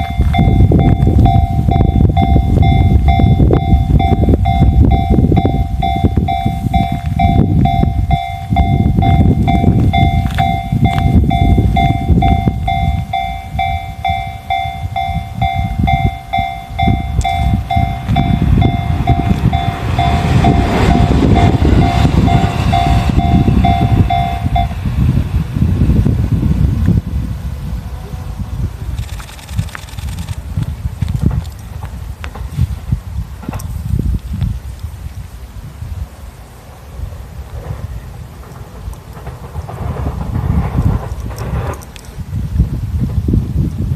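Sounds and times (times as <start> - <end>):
level crossing bell ringing: 0.0 - 24.8
train rumbling over rails: 0.0 - 43.9
rail hiss: 5.2 - 43.9.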